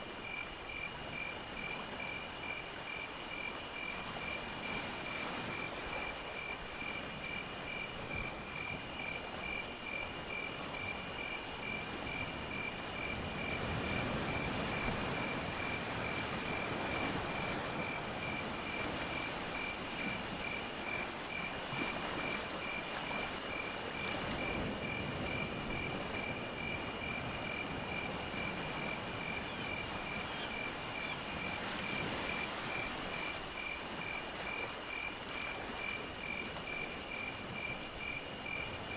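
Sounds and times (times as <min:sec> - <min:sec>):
cricket chirping: 0:00.0 - 0:38.9
high pulsing insect song: 0:00.0 - 0:38.9.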